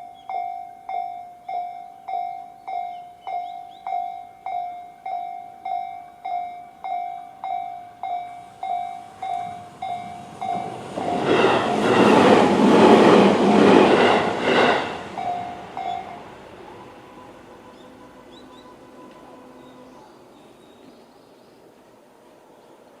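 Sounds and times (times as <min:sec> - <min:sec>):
level crossing warning bell: 0:00.0 - 0:11.7, 0:14.9 - 0:20.2
electric train passing: 0:00.0 - 0:23.0.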